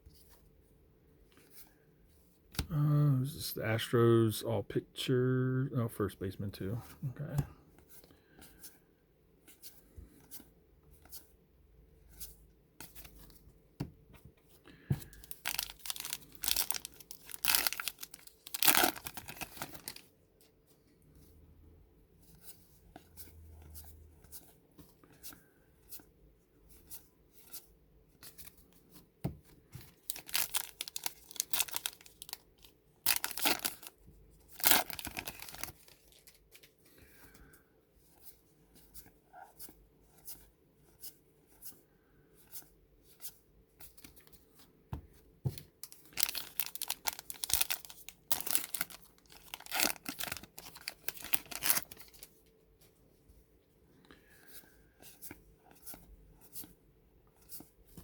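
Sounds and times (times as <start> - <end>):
card wrappers torn and crinkled: 15.2 - 20.1, 30.0 - 36.8, 45.8 - 52.3.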